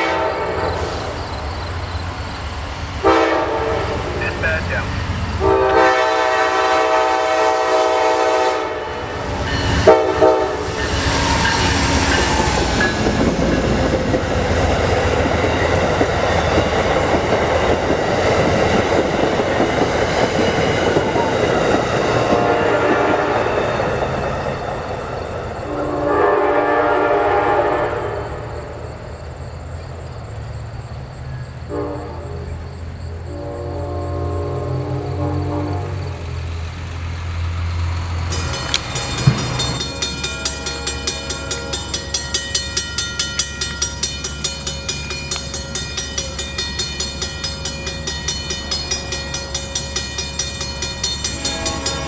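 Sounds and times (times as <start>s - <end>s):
locomotive air horn blowing: 0.0s - 0.8s, 3.0s - 4.2s, 5.4s - 9.1s, 9.8s - 10.7s, 22.2s - 23.5s, 25.7s - 28.2s, 31.7s - 32.3s, 33.3s - 36.1s, 51.4s - 52.0s
train wheels on rails: 0.0s - 52.0s.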